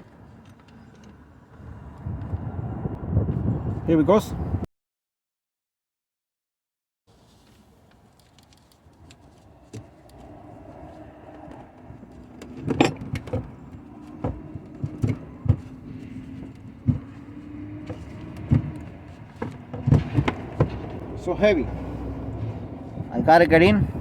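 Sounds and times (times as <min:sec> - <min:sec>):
battery case knocking and clunking: 0:12.4 - 0:17.2, 0:17.8 - 0:21.0.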